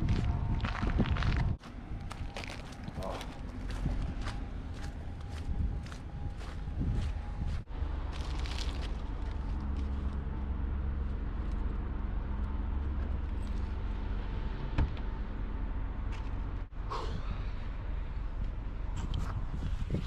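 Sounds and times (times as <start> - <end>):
vehicle engine and road rumble: 0.0 - 20.0.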